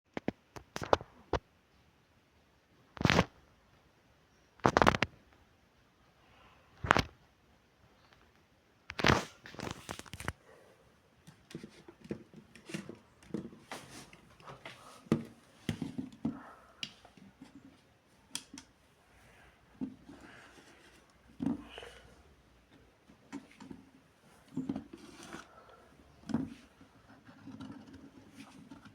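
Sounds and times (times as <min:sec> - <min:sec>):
small clicks and scrapes: 0:00.1 - 0:01.4, 0:04.6 - 0:05.4, 0:08.1 - 0:10.4, 0:11.2 - 0:18.8, 0:22.6 - 0:28.9
crinkling rustles: 0:08.9 - 0:10.4.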